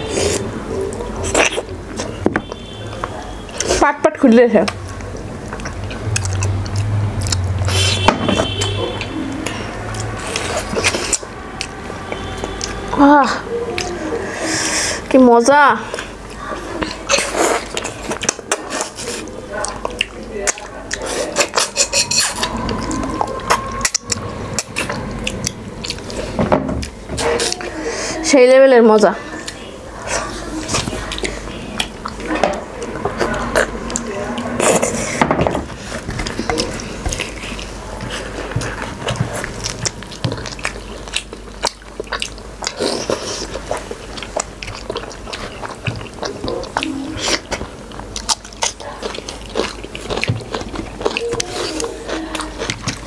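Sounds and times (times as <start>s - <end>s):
chewing: 0.0s - 3.9s, 4.6s - 15.2s, 15.8s - 28.2s, 29.2s - 53.0s
sucking: 20.9s - 26.4s.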